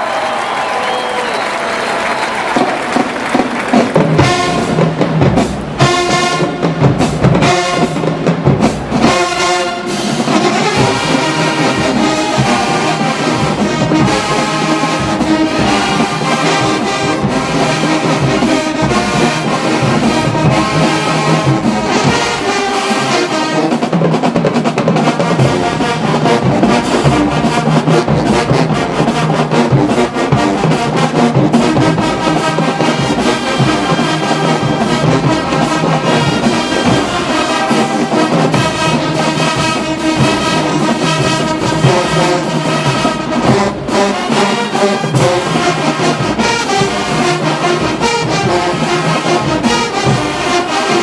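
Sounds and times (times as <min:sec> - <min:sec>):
marching band playing: 0:00.0 - 0:51.0.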